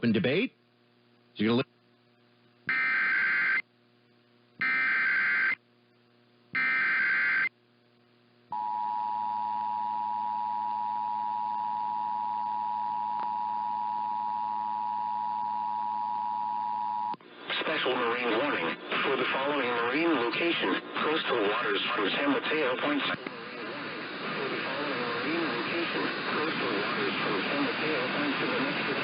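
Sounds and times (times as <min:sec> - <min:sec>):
harsh digital data bursts: 0:02.7 - 0:03.6, 0:04.6 - 0:05.6.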